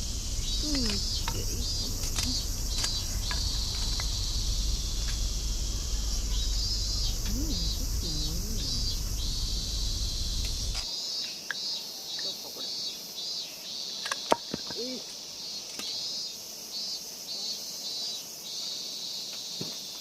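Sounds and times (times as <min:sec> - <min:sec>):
faint clicks: 0:00.0 - 0:10.9
insects shrilling: 0:00.0 - 0:10.9
low rumble: 0:00.0 - 0:10.9.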